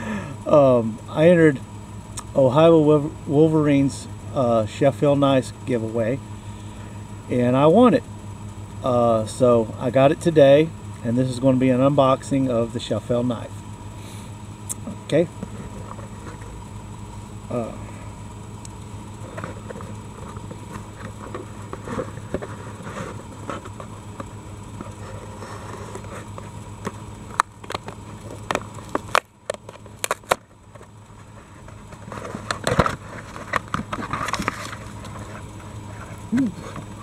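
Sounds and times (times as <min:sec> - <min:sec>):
electrical hum: 0:00.0 - 0:37.0
package rustling and scraping: 0:19.3 - 0:24.0, 0:24.8 - 0:26.6, 0:27.7 - 0:37.0.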